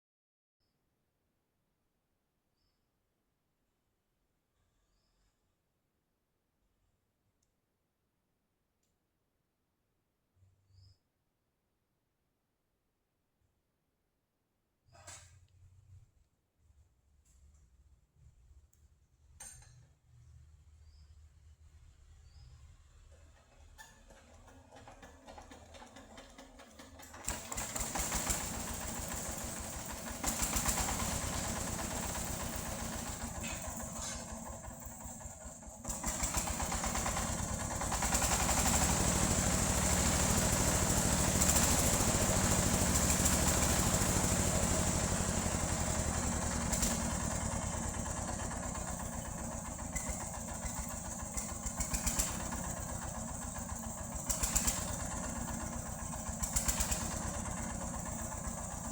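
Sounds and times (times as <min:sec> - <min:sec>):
band saw cutting log: 0:35.9 - 0:49.4.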